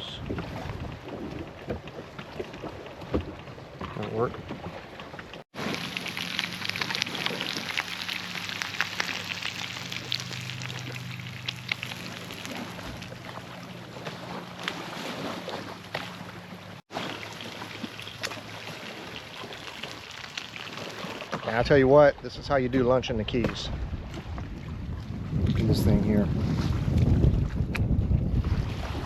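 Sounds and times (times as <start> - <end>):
fish frying in oil: 5.6 - 13.6, 16.9 - 21.4
low steady hum: 5.6 - 19.8.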